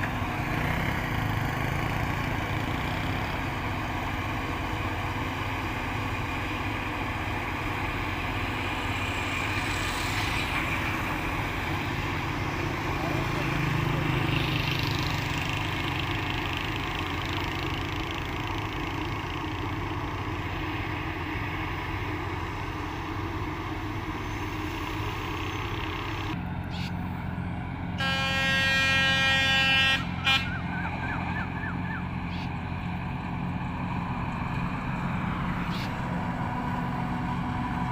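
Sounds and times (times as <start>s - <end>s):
harvester engine running: 0.0s - 37.9s
vehicle horn: 28.0s - 31.1s.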